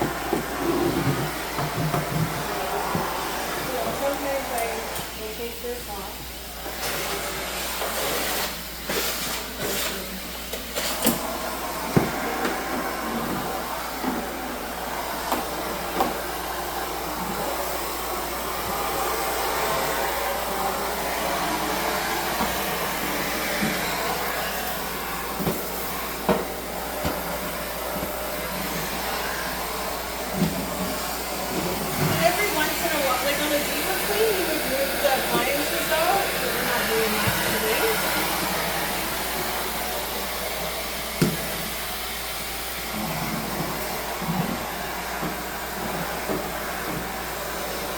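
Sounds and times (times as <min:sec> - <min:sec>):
vacuum tool knocking on floor: 0:00.0 - 0:03.2, 0:11.9 - 0:12.6, 0:25.3 - 0:27.3, 0:37.2 - 0:37.7, 0:41.2 - 0:41.5
vacuum cleaner suction hiss: 0:00.0 - 0:47.9.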